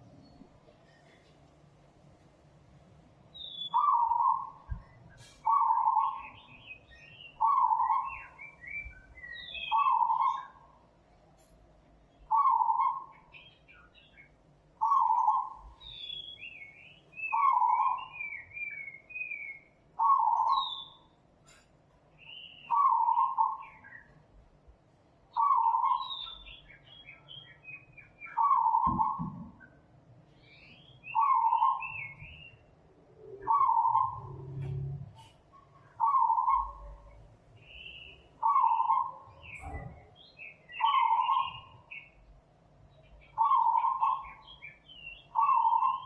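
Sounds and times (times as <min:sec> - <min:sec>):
small birds chirping: 0:03.0 - 0:24.5, 0:25.2 - 0:46.0
bird hooting call: 0:03.6 - 0:06.4, 0:12.3 - 0:13.2, 0:17.3 - 0:21.0, 0:22.7 - 0:23.7, 0:28.3 - 0:29.6, 0:31.1 - 0:32.4, 0:33.2 - 0:35.0, 0:36.0 - 0:37.2, 0:38.4 - 0:40.0, 0:43.4 - 0:44.4, 0:45.3 - 0:46.0.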